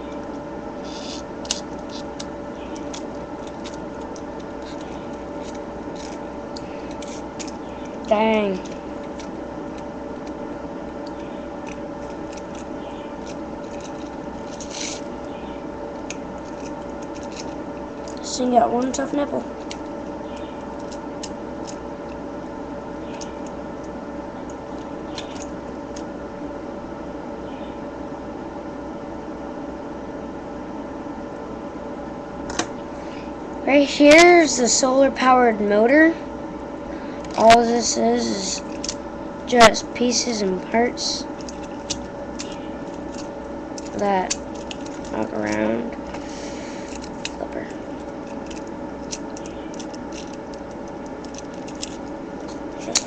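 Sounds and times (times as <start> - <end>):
steady background hum: 0.0 - 53.0
plastic toy scraping: 0.8 - 2.1, 6.8 - 7.6, 12.3 - 15.1.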